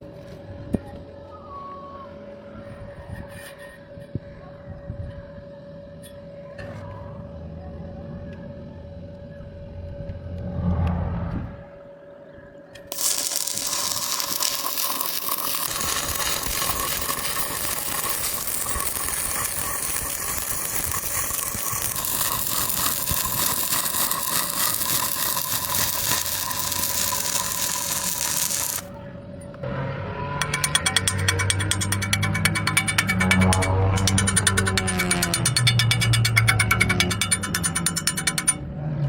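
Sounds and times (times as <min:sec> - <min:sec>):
welding arc crackling hiss: 0:12.9 - 0:28.9.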